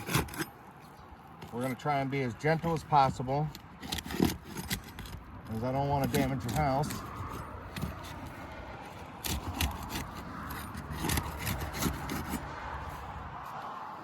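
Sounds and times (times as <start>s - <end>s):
shingles being scraped loose: 0.0s - 0.5s, 3.0s - 12.6s.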